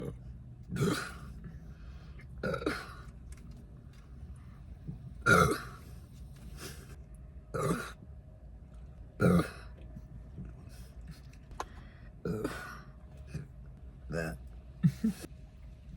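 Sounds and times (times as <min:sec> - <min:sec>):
woman burping: 0:00.7 - 0:01.3, 0:02.4 - 0:03.0, 0:05.3 - 0:05.8, 0:07.6 - 0:08.0, 0:12.2 - 0:12.8.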